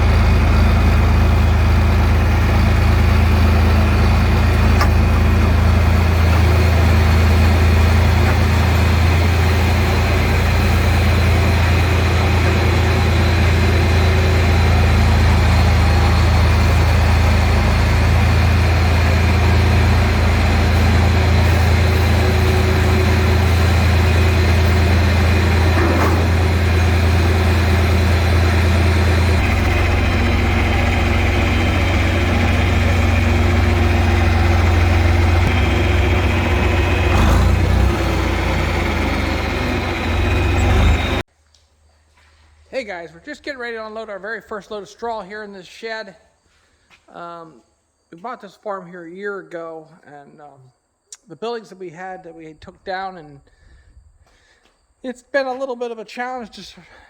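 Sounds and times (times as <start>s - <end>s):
engine running with low hum: 0.0s - 41.3s.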